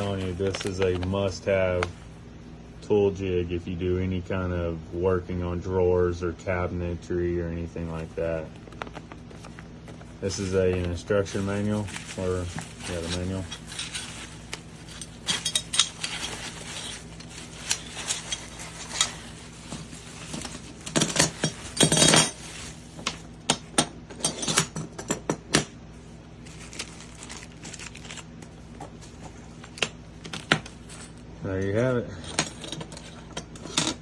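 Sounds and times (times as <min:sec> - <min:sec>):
metal parts clinking: 0:14.9 - 0:19.2.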